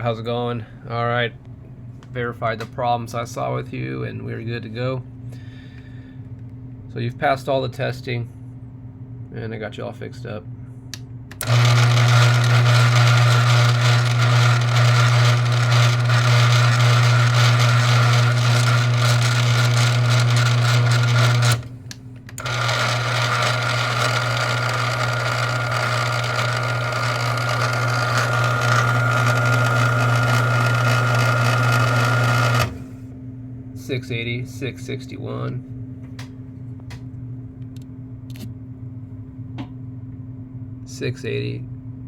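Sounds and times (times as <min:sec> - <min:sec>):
electric motor running: 0:11.3 - 0:33.0.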